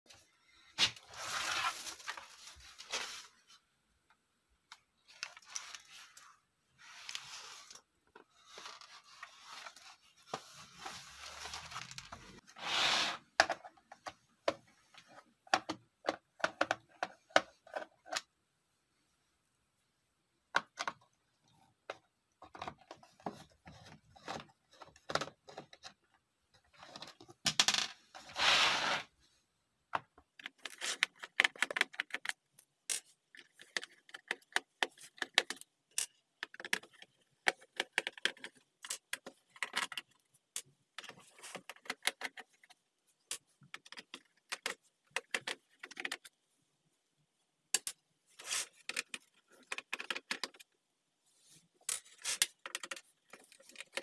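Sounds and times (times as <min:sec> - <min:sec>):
keyboard clicks and plastic clatter: 0:43.3 - 0:46.3, 0:48.8 - 0:50.7, 0:52.4 - 0:54.0.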